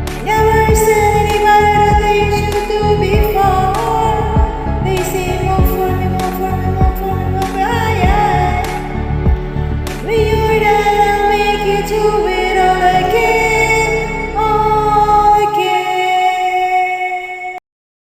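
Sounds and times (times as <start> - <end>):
woman singing with music: 0.0 - 17.6.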